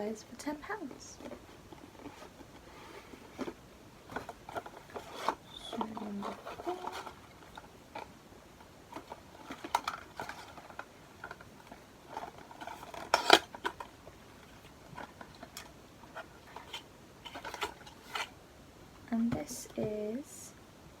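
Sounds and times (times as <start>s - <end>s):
hands handling small box packaging: 0.8s - 18.4s
packaging clatter: 1.2s - 8.1s, 8.9s - 18.3s.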